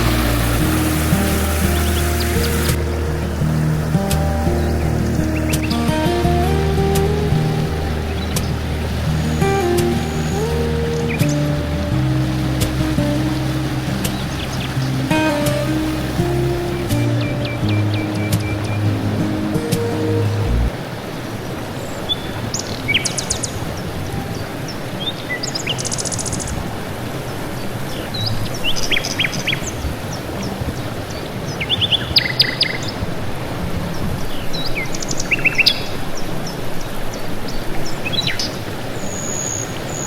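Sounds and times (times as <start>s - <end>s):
steady background hiss: 0.0s - 30.1s.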